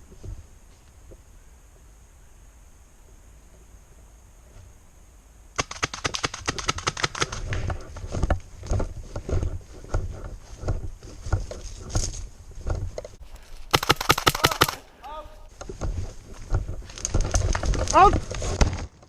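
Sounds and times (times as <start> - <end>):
quick footsteps: 5.6 - 19.0.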